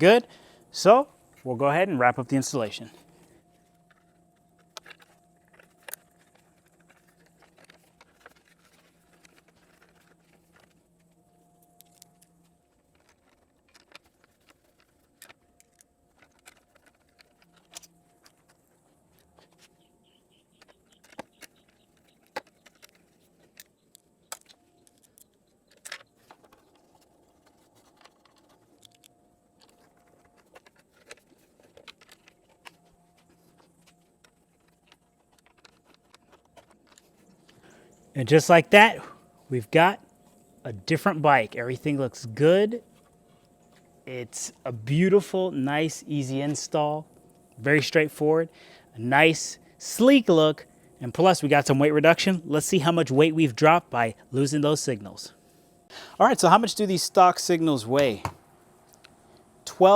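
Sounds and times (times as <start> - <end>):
faint hum: 0.0 - 59.9
hand tools clicking and clinking: 2.4 - 39.2.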